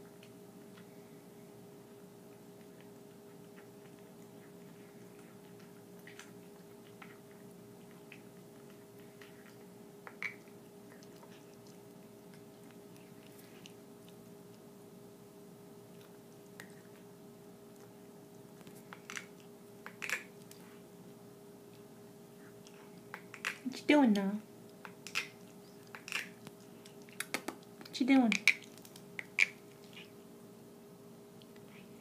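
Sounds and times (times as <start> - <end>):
pet's teeth crunching clicks: 24.7 - 29.9.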